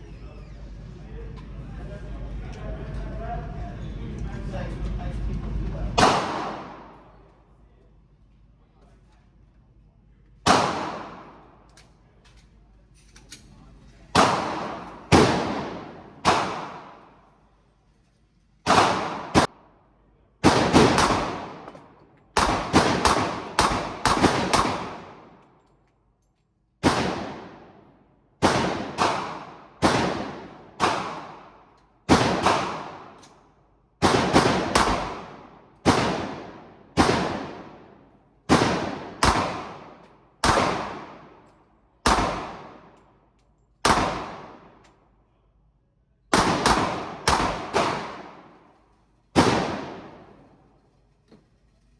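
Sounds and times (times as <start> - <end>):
gunshots echoing: 5.9 - 7.1, 10.4 - 11.6, 14.1 - 17.3, 18.7 - 19.6, 20.4 - 25.4, 26.8 - 33.2, 34.0 - 41.4, 42.0 - 43.0, 43.8 - 44.8, 46.3 - 48.7, 49.3 - 50.6.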